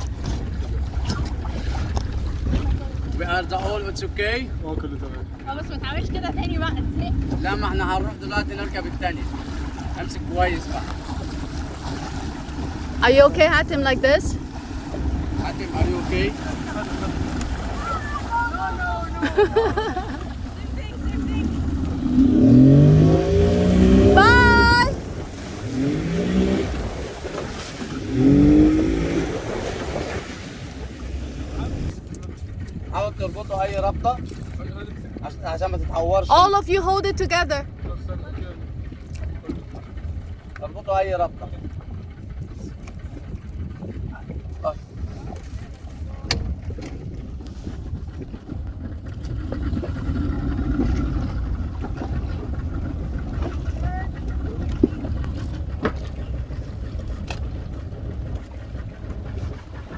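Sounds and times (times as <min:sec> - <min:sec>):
motorboat engine speeding up: 0:00.0 - 0:59.9
water rumble: 0:00.0 - 0:59.9
wind: 0:00.0 - 0:59.9.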